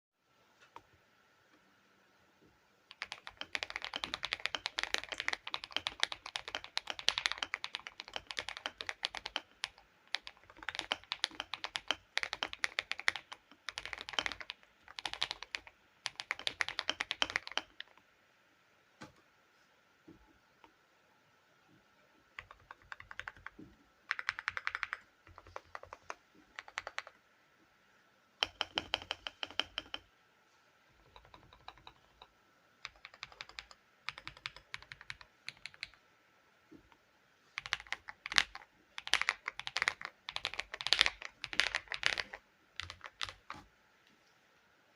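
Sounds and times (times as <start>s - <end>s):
typing on mechanical keyboard: 2.9s - 18.0s, 22.4s - 27.2s, 28.4s - 30.1s, 31.0s - 36.0s, 37.6s - 43.6s.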